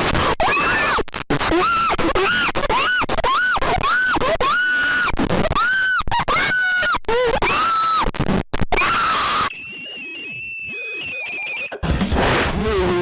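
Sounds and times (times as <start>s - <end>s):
shrill scream-like alarm shrieks: 4.1s - 8.1s, 8.8s - 11.8s.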